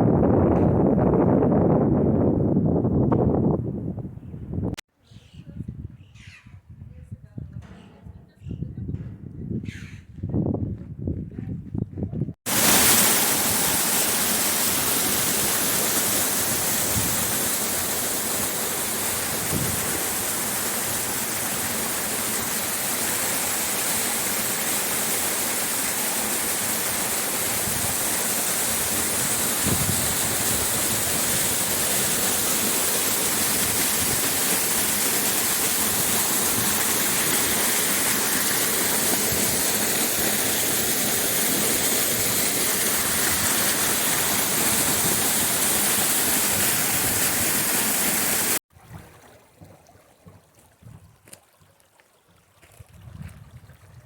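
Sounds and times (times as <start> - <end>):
running water rushing: 12.5 - 52.7.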